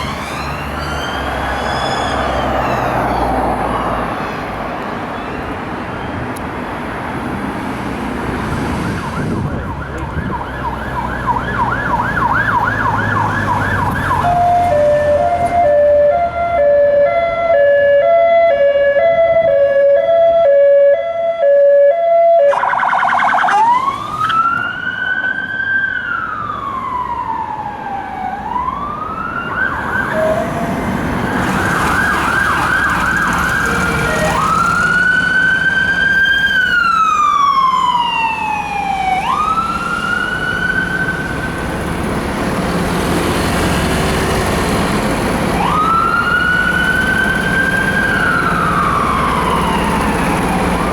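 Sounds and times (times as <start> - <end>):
wailing and yelping siren: 0.0 - 5.6, 8.6 - 42.1, 45.5 - 50.9
engine and road noise: 0.0 - 50.9
two-tone siren: 8.7 - 41.7, 45.6 - 50.9.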